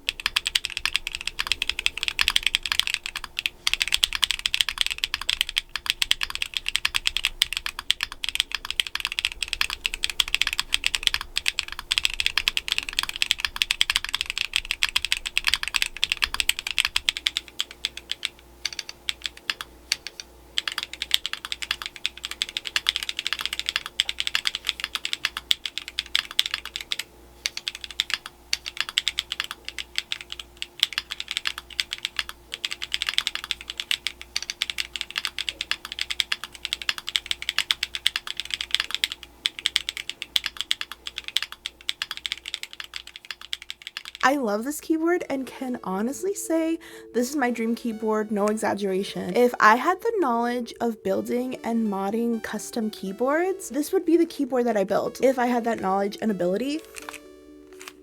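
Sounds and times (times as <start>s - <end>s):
fast typing on mechanical keyboard: 0.0s - 45.2s, 56.8s - 58.0s.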